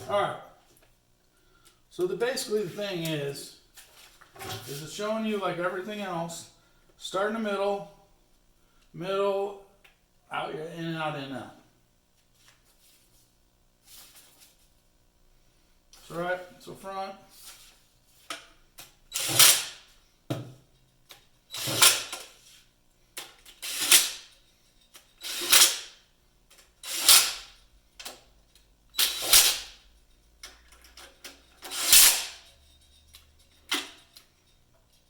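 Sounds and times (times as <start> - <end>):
power tool bursts on bolts: 19.1 - 19.9, 21.5 - 22.4, 23.2 - 24.4, 25.0 - 26.0, 26.8 - 27.6, 28.9 - 29.8, 31.6 - 32.5.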